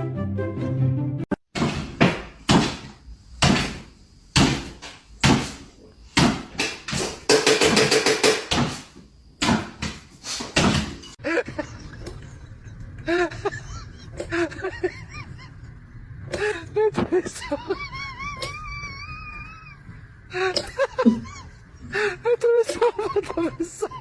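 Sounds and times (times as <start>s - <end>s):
loud knocks or bangs: 1.5s - 11.0s.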